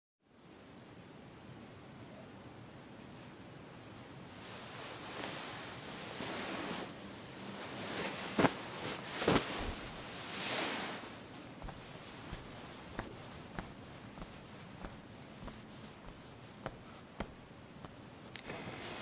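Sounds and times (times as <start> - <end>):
rustling and swishing: 4.2 - 19.0.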